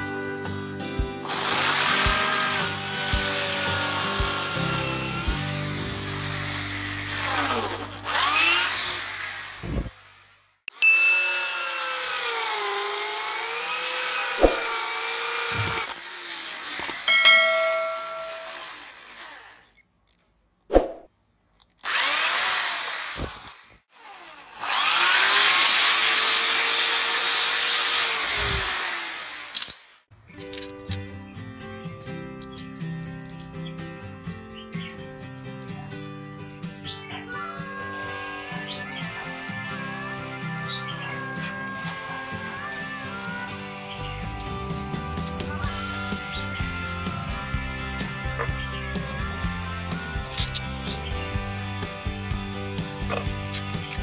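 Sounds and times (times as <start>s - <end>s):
power drill whining: 1.2s - 19.9s, 21.8s - 30.1s.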